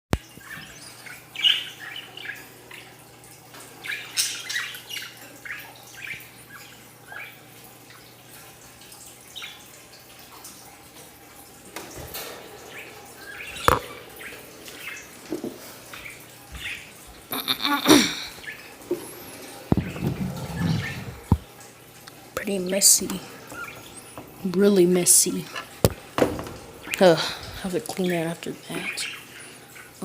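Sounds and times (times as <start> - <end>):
budgerigars chirping and squawking: 0.3 - 3.0, 3.7 - 7.5, 12.1 - 17.0, 19.7 - 21.5, 22.6 - 24.4, 26.8 - 30.0.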